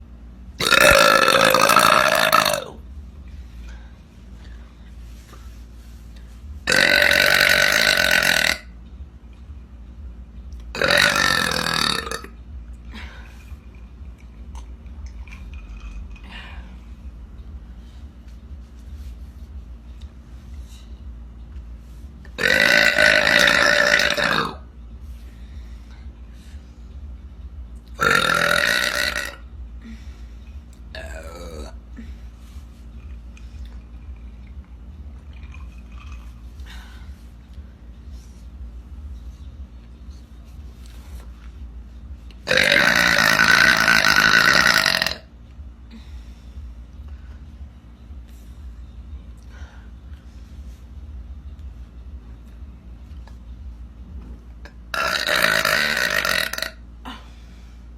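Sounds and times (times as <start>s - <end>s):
girl burping: 0.6s - 2.8s, 10.8s - 12.3s, 22.4s - 24.6s, 31.0s - 31.8s, 55.0s - 57.2s.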